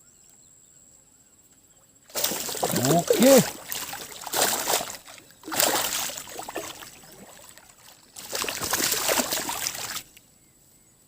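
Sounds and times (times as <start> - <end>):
water splashing and sloshing: 2.1 - 10.2.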